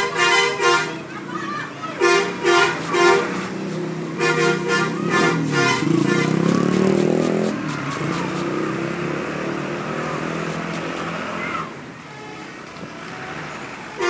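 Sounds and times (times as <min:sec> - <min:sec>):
multi-tone bus horn tune: 0:00.0 - 0:01.1, 0:02.0 - 0:03.5, 0:04.2 - 0:06.6
bus engine pulling past: 0:01.0 - 0:14.0.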